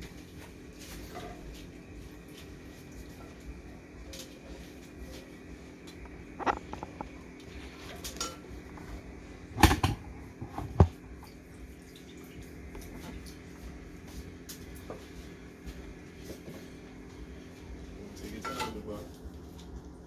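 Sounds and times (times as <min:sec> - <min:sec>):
metal utensils and dishes clinking: 0:07.8 - 0:09.0, 0:18.3 - 0:19.0.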